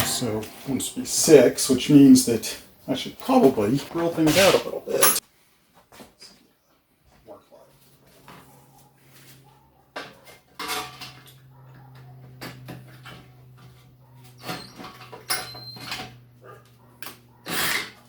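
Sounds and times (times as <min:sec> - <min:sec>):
metal tools clinking: 0:04.3 - 0:05.2, 0:10.6 - 0:11.4, 0:12.4 - 0:16.2
high squeaks: 0:14.2 - 0:16.1.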